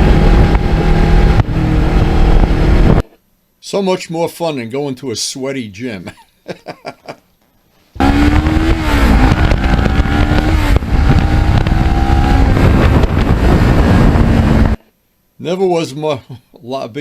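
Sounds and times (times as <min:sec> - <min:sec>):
wind rush: 0:00.0 - 0:03.0, 0:08.0 - 0:14.8
motorcycle engine at speed: 0:00.0 - 0:03.1, 0:08.0 - 0:14.8.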